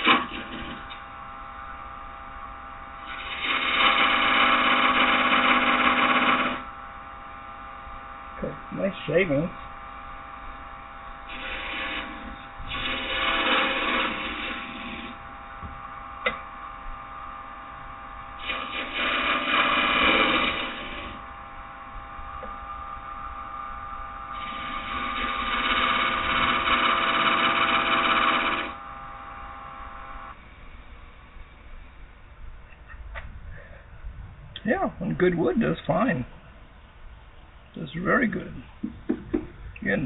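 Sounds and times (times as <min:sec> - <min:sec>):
wood lathe motor humming: 0:00.0 - 0:01.0, 0:02.9 - 0:07.4, 0:09.4 - 0:30.4
turning tool cutting wood: 0:03.0 - 0:06.7, 0:11.3 - 0:15.2, 0:18.4 - 0:21.3, 0:24.3 - 0:28.8.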